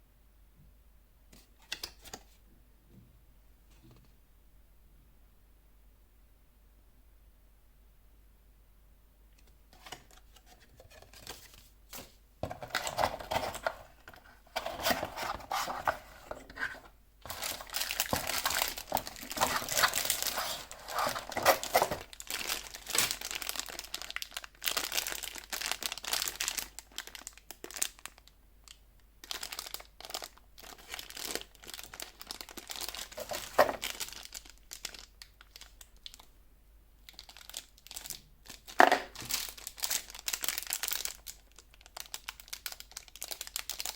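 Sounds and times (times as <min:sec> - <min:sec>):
plastic packaging crinkling: 0:09.8 - 0:36.3, 0:37.0 - 0:43.9.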